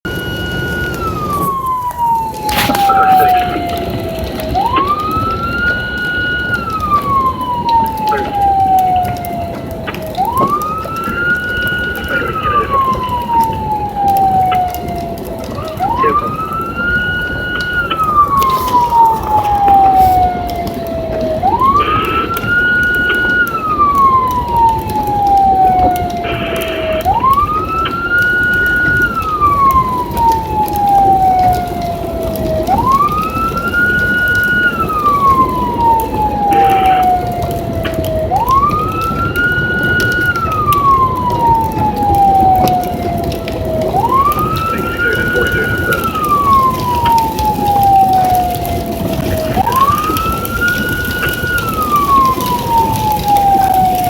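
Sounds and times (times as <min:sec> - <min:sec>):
emergency vehicle siren wailing: 0:00.0 - 0:54.0.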